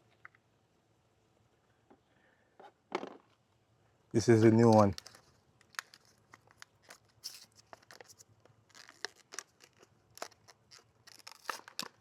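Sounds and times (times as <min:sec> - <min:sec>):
faint handling clicks and rustles: 0:04.2 - 0:12.0.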